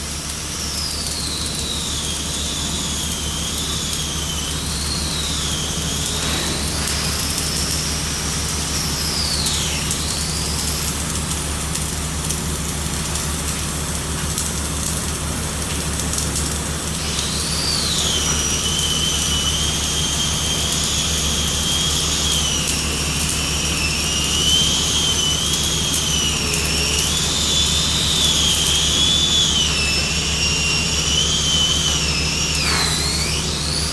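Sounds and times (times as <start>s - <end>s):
welding arc crackling: 0.0s - 33.9s
high wavering whine: 17.0s - 33.9s.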